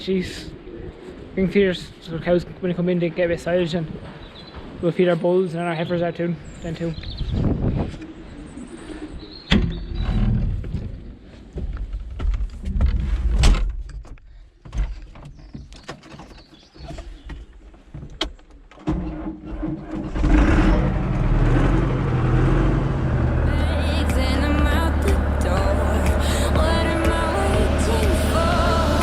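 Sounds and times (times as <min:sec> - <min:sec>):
clunks and knocks: 0:09.5 - 0:11.0, 0:11.6 - 0:20.6
tractor engine running: 0:20.0 - 0:29.0.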